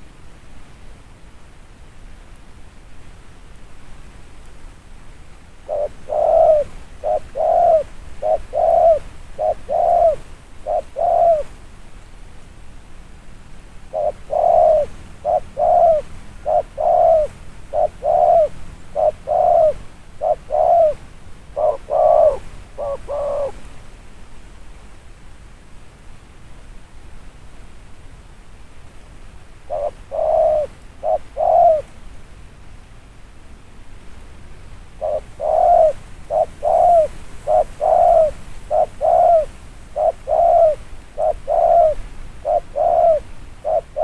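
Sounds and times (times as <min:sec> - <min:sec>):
dove cooing: 0:05.7 - 0:11.5, 0:13.9 - 0:23.6, 0:29.7 - 0:31.9, 0:35.0 - 0:44.0.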